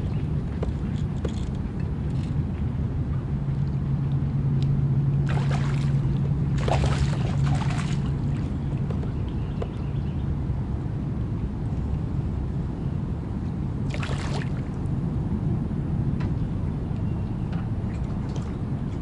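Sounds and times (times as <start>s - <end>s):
boat motor humming: 0.0s - 10.8s.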